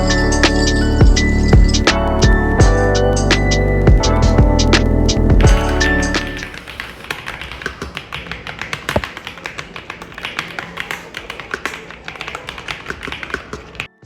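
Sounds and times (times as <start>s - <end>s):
mechanical keyboard typing: 5.6s - 14.0s.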